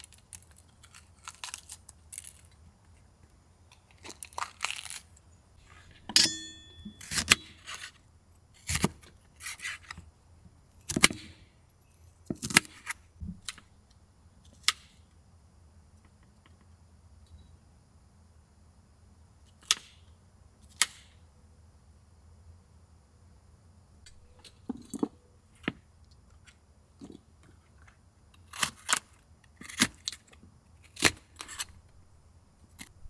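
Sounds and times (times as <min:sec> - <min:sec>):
handling clicks and knocks: 0:05.6 - 0:07.5
ringing metallic clink: 0:05.9 - 0:07.4.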